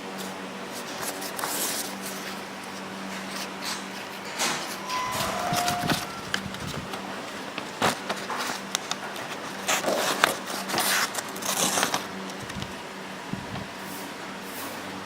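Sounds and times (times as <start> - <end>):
metal scraping and rubbing: 2.0 - 7.4.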